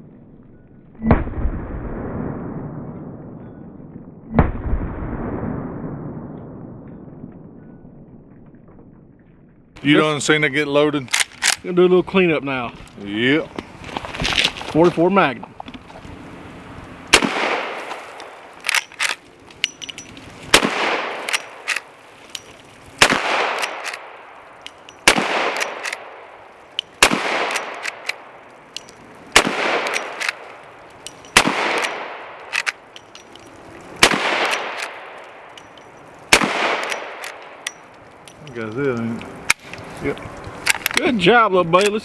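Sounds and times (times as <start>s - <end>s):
echoing gunshots: 17.1s - 19.2s, 20.5s - 21.8s, 23.0s - 28.4s, 29.3s - 30.6s, 31.3s - 32.8s, 34.0s - 35.5s, 36.3s - 37.6s.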